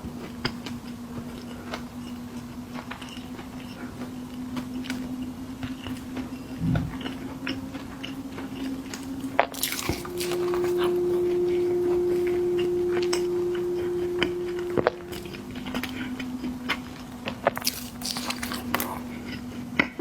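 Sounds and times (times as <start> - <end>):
steady hum: 0.0 - 20.0
person chewing crunchy snacks: 0.2 - 11.3, 15.1 - 20.0.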